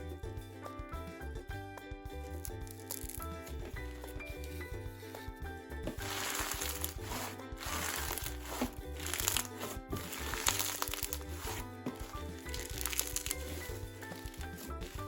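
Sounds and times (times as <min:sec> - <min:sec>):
background music: 0:00.0 - 0:15.0
crunchy slime crackling and popping: 0:02.4 - 0:03.3, 0:06.1 - 0:15.0.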